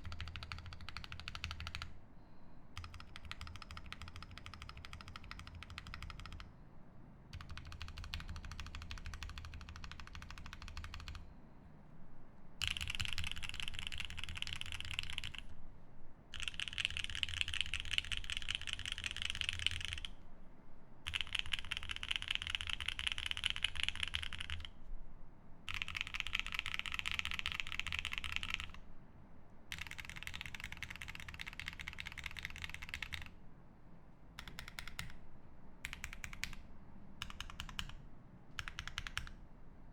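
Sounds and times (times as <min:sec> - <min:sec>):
fast typing on mechanical keyboard: 0:00.0 - 0:02.0, 0:02.8 - 0:06.5, 0:07.4 - 0:11.2, 0:12.6 - 0:15.5, 0:16.3 - 0:20.1, 0:21.1 - 0:24.8, 0:25.7 - 0:28.8, 0:29.7 - 0:33.4, 0:34.4 - 0:35.2, 0:35.8 - 0:36.6, 0:37.2 - 0:38.0, 0:38.6 - 0:39.4.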